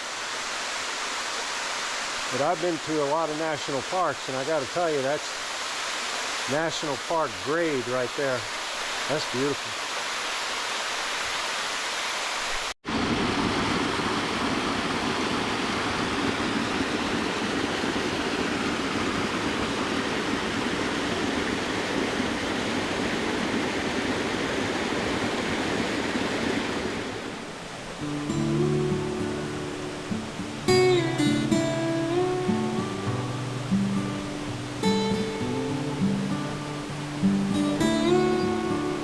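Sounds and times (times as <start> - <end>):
waterfall rushing: 0.0 - 39.0.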